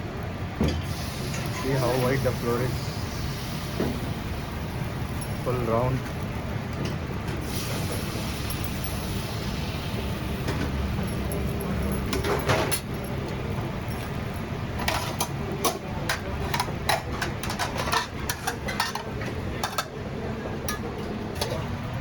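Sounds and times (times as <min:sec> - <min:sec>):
steady low rumble: 0:00.0 - 0:14.9
metal utensils clinking on dishes: 0:14.8 - 0:20.0.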